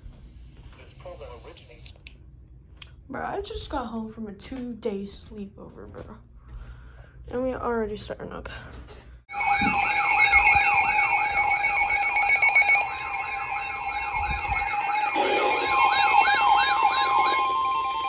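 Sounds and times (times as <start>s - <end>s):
steady warning tone: 9.3s - 18.0s
warbling alert alarm: 9.3s - 18.0s.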